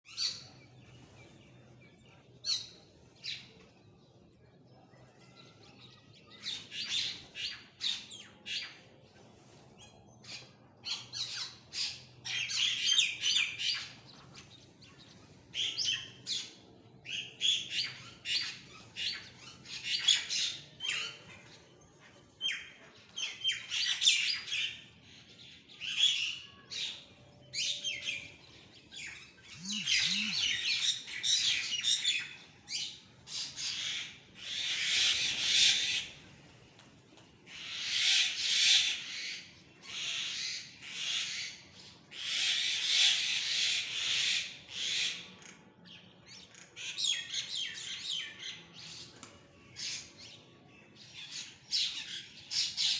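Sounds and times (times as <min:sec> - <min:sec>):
birds chirping: 0:27.9 - 0:31.9.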